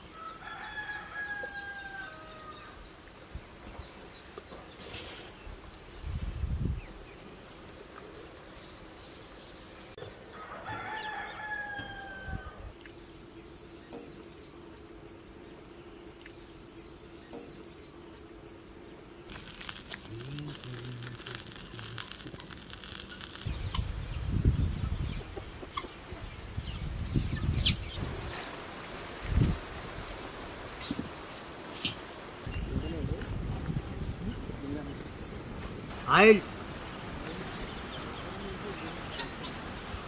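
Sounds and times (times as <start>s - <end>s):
rooster crowing: 0.0s - 2.8s, 10.3s - 12.7s.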